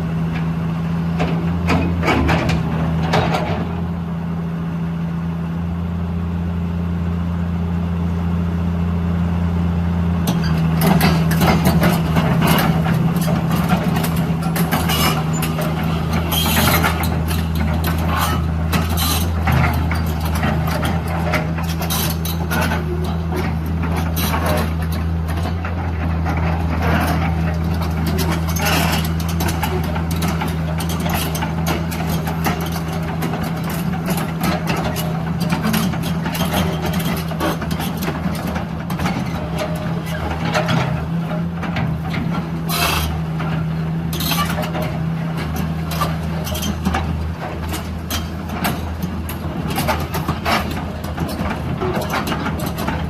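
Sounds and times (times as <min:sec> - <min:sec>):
excavator diesel engine humming: 0:00.0 - 0:53.0.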